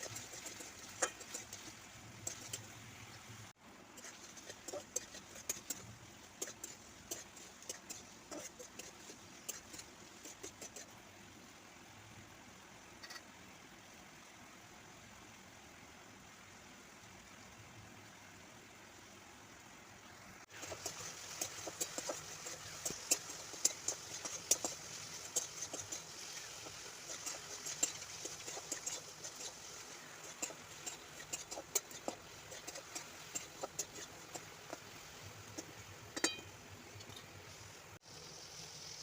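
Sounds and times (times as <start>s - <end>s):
food sizzling in a pan: 0.0s - 11.6s, 20.4s - 39.0s.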